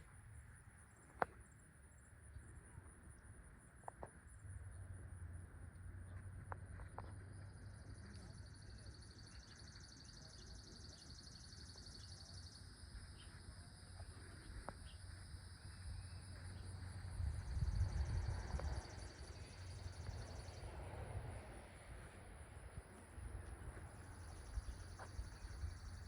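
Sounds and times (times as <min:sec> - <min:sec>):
insects trilling: 0:07.8 - 0:26.0.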